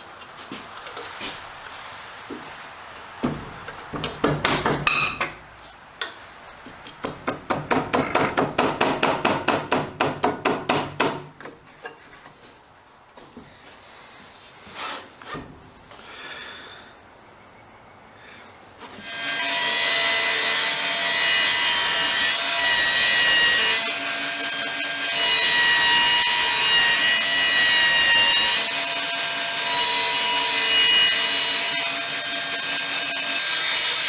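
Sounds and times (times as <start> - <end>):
rapid hammering: 3.2 - 5.0, 6.9 - 11.3
scattered knocks: 3.2 - 5.4, 7.0 - 11.3.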